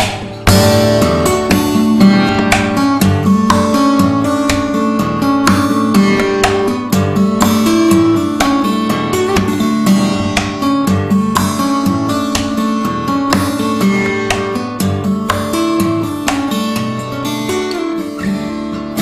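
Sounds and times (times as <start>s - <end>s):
strummed acoustic guitar: 0.0s - 19.0s.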